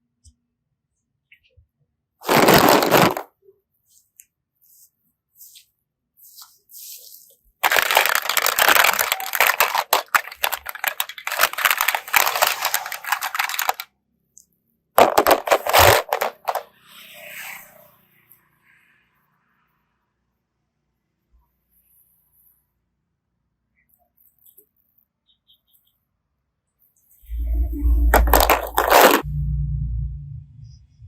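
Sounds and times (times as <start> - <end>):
slime crackling when squeezed: 7.6 - 13.8.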